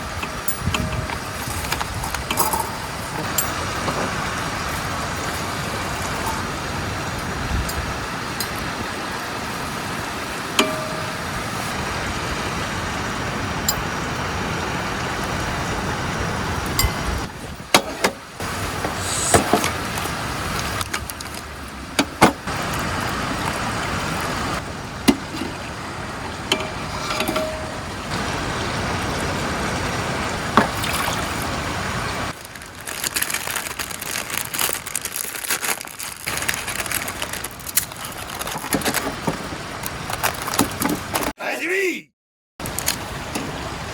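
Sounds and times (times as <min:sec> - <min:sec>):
river rushing: 0:00.0 - 0:17.3, 0:18.3 - 0:32.4.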